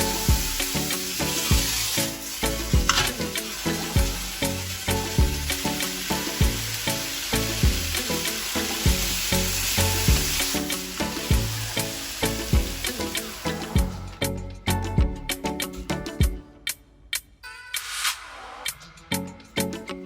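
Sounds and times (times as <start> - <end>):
food sizzling in a frying pan: 0.0 - 14.0
background music with a beat: 0.0 - 20.0.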